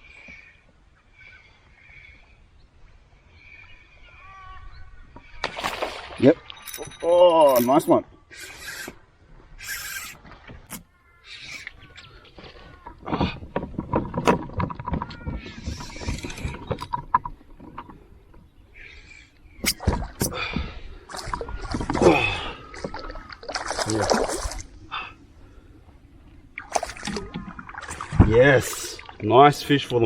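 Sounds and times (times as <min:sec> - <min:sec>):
water sloshing: 0:05.1 - 0:30.0
knocks and rattles on hull: 0:12.4 - 0:18.4, 0:26.7 - 0:28.4
fish splashing: 0:21.1 - 0:24.9, 0:26.6 - 0:29.2.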